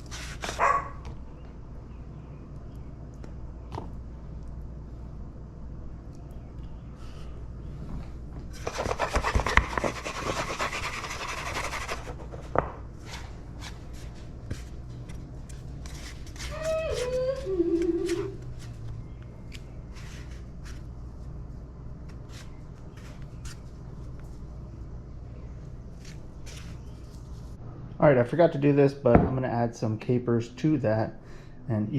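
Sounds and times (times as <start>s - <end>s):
scraping or rubbing: 0.0s - 0.8s, 8.5s - 18.9s.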